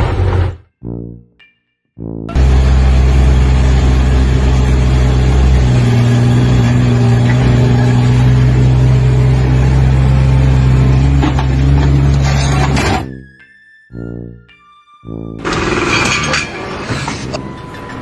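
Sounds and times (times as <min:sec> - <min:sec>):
engine running with deep hum: 0:02.3 - 0:13.2, 0:15.4 - 0:17.6.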